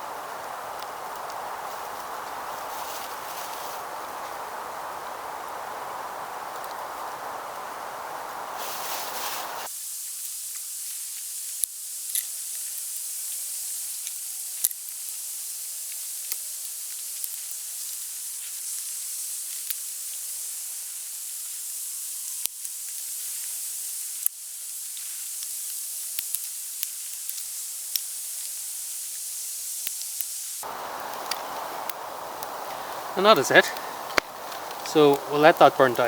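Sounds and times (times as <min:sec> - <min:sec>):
campfire crackling and popping: 0:00.0 - 0:09.7, 0:30.6 - 0:36.0.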